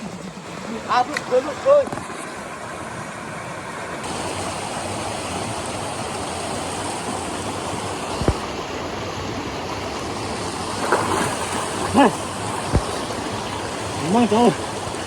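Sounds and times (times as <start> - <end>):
waterfall rushing: 3.6 - 15.0.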